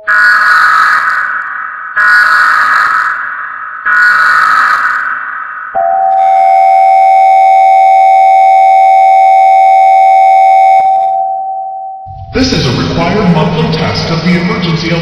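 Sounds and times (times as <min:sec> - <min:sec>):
emergency alert tone: 0:05.7 - 0:14.6.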